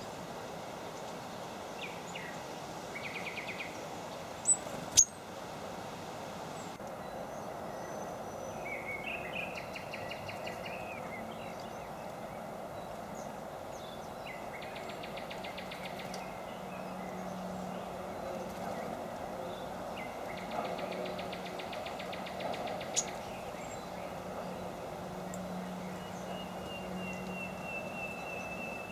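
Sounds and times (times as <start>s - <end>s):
birds chirping: 1.0s - 5.3s, 6.5s - 28.9s
rapid rattling bird trills: 1.0s - 5.3s, 12.9s - 28.9s.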